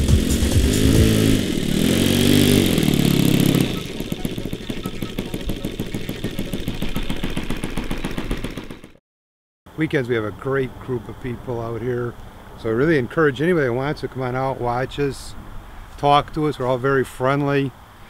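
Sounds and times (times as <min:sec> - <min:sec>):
model airplane engine revving: 0:00.0 - 0:09.0.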